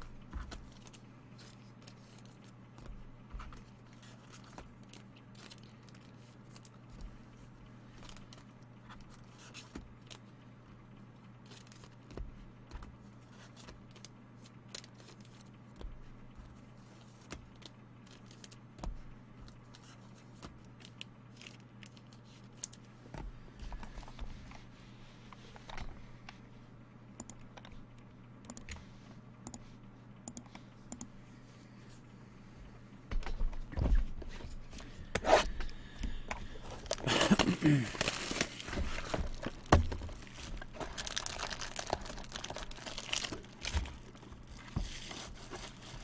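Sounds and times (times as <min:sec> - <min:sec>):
low steady hum: 0:00.0 - 0:46.0
packaging crinkling and rustling: 0:03.5 - 0:06.8, 0:20.6 - 0:22.8, 0:36.6 - 0:46.0.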